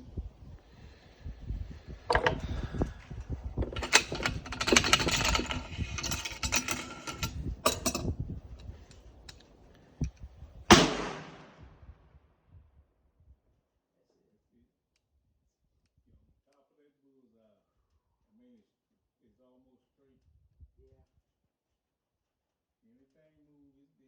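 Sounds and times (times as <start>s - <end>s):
rifle clicking and rattling: 2.1s - 9.5s, 10.7s - 11.5s
rifle shot with echo: 10.7s - 11.7s.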